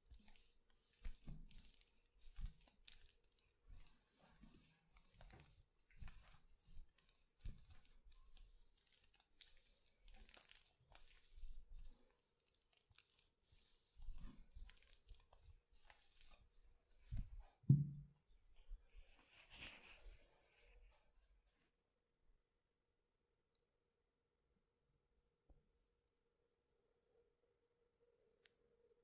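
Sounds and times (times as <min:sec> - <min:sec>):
hands rustling and rubbing: 0:00.0 - 0:17.6, 0:18.5 - 0:21.5
dull thumps: 0:17.6 - 0:18.2.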